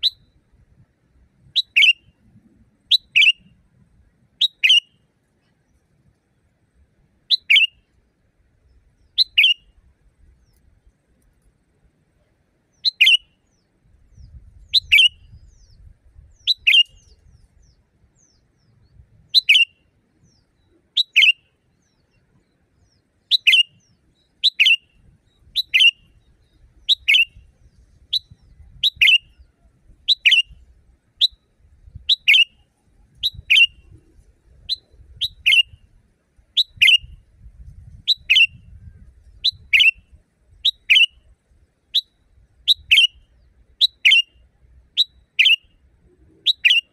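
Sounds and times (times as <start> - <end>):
bird sharp call notes: 1.6 - 2.1, 2.9 - 3.5, 4.4 - 5.0, 7.3 - 7.8, 9.2 - 9.7, 24.4 - 24.9, 25.6 - 26.1, 26.9 - 27.4, 32.1 - 32.6, 42.7 - 44.4, 45.0 - 45.7, 46.3 - 46.9.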